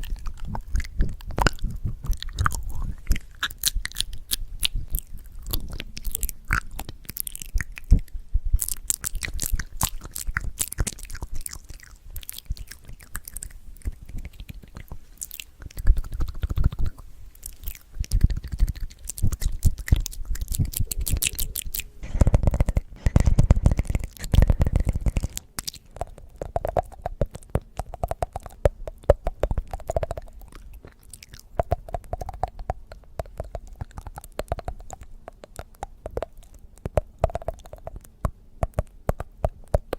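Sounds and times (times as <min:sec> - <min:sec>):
low thumps: 0:20.7 - 0:27.4.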